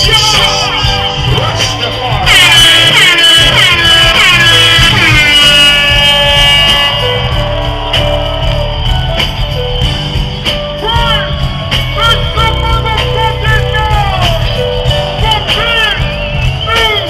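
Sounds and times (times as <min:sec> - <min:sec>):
loud hip-hop music: 0:00.0 - 0:17.0.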